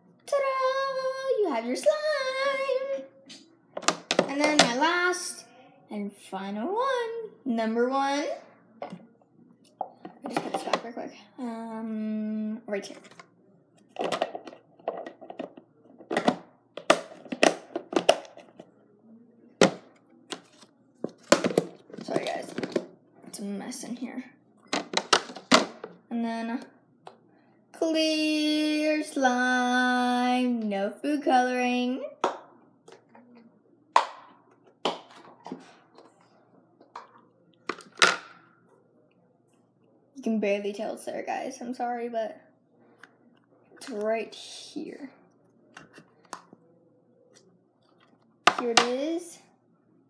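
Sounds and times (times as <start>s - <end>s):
small objects knocking and clacking: 24.7s - 25.9s.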